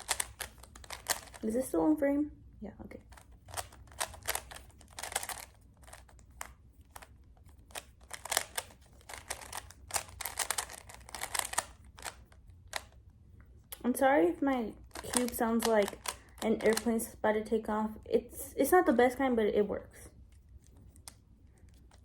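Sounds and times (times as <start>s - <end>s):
puzzle cube turning with clicks: 0.0s - 1.7s, 3.0s - 13.1s, 14.7s - 17.2s, 20.2s - 22.0s.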